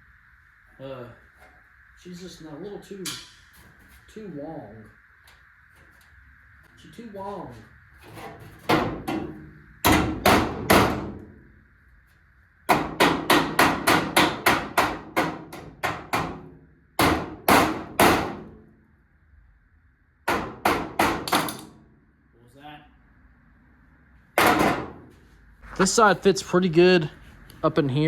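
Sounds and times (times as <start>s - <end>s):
hammer on sheet metal: 8.6s - 11.2s, 12.7s - 18.6s, 20.3s - 21.7s, 24.4s - 25.0s.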